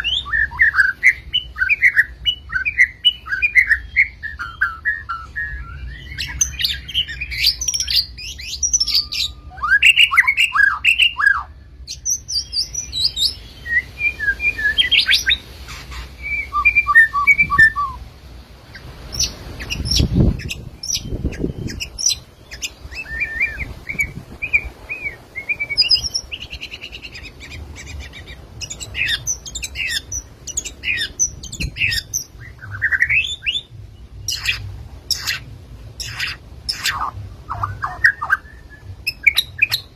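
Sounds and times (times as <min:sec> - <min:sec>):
bird singing whistled phrases: 0:00.0 - 0:15.4, 0:16.2 - 0:18.0, 0:19.2 - 0:33.7, 0:36.0 - 0:39.9.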